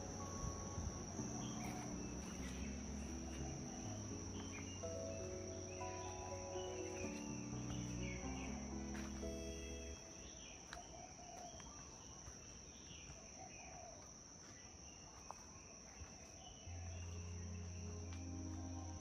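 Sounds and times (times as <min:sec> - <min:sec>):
low sustained music notes: 0:00.0 - 0:11.1, 0:16.6 - 0:19.0
bird chirps: 0:00.0 - 0:14.0
crickets trilling: 0:00.0 - 0:19.0.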